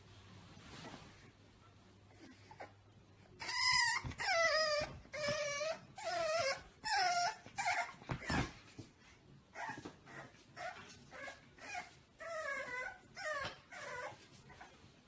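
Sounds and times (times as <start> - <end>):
dog whining: 3.4 - 8.6, 9.6 - 14.7.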